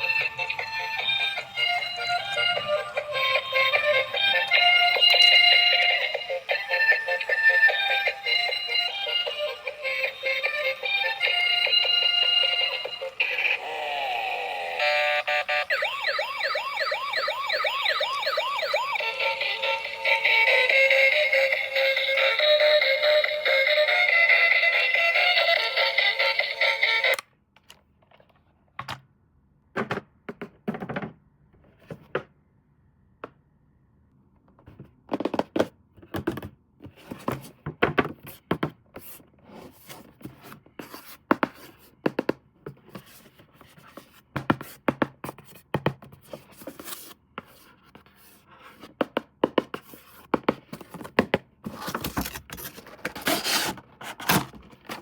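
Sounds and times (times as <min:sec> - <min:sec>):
music: 0:00.0 - 0:15.4, 0:18.4 - 0:27.2
toys and packaging handled: 0:45.5 - 0:49.0, 0:49.8 - 0:55.0.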